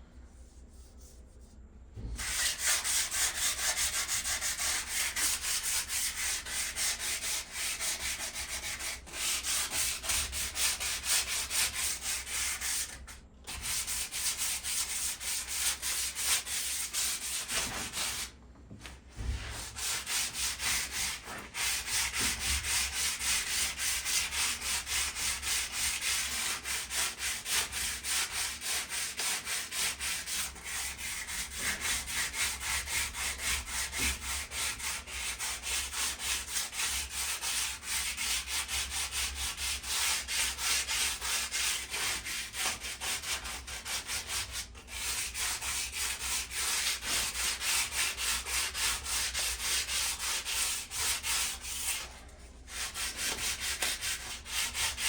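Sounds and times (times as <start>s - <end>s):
sandpaper scraping metal: 52.7s - 55.0s.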